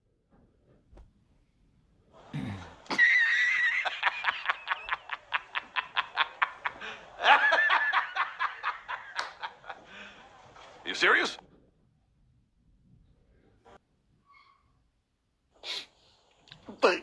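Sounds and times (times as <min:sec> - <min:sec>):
high-pitched laughter: 0:02.8 - 0:09.9.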